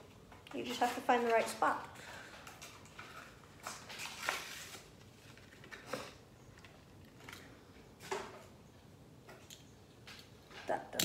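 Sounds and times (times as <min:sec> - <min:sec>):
cardboard and plastic packaging crinkling: 0:02.5 - 0:06.2.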